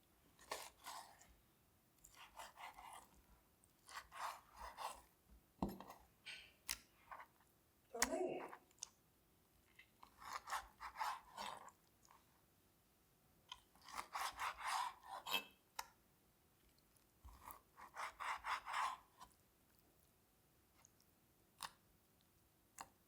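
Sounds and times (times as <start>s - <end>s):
food being cut on kitchen surface: 0.4s - 1.2s, 2.0s - 3.2s, 3.8s - 6.0s, 10.0s - 11.8s, 13.8s - 15.6s, 17.2s - 19.3s.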